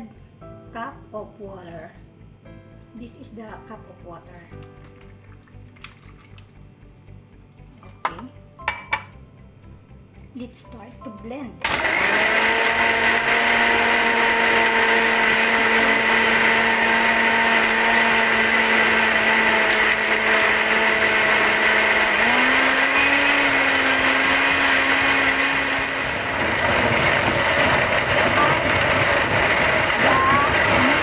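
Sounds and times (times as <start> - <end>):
blender crushing ice: 11.6 - 31.0
blender motor whine: 11.6 - 31.0.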